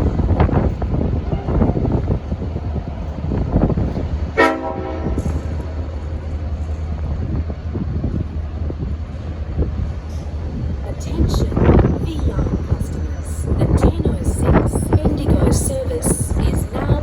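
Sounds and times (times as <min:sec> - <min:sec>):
wind buffeting microphone: 0:00.0 - 0:17.0
locomotive horn toot: 0:04.4 - 0:05.8.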